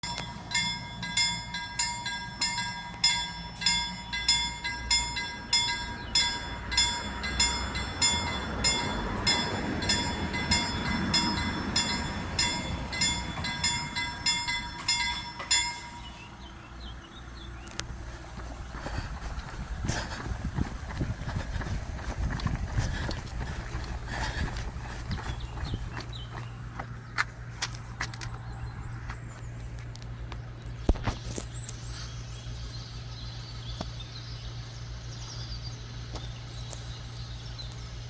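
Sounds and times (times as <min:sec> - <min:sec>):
level crossing bell ringing: 0:00.0 - 0:16.4
train passing rumble: 0:00.0 - 0:30.6.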